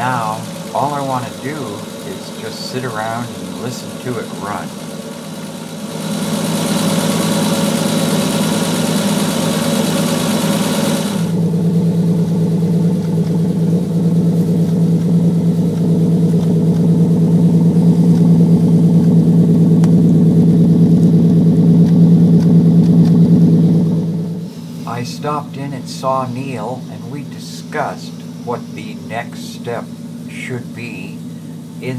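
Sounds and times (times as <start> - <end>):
car engine idling: 0.0 - 31.9
hiss: 24.4 - 26.1.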